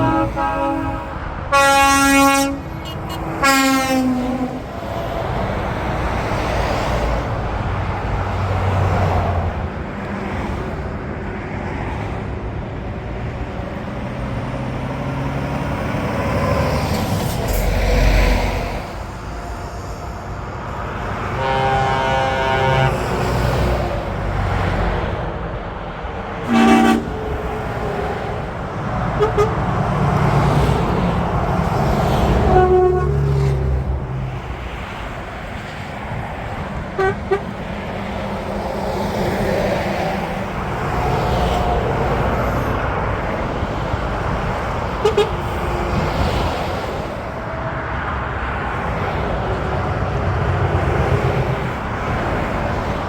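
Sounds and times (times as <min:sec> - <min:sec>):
horn toots: 0:00.0 - 0:04.7, 0:17.2 - 0:24.0, 0:26.4 - 0:27.8, 0:29.2 - 0:29.7, 0:32.2 - 0:33.7, 0:37.0 - 0:37.5, 0:45.0 - 0:45.5
truck air horn: 0:00.0 - 0:04.8, 0:16.9 - 0:24.6, 0:26.4 - 0:30.7, 0:32.1 - 0:34.0, 0:36.9 - 0:37.6, 0:45.0 - 0:46.3
lorries passing on motorway: 0:00.0 - 0:53.0.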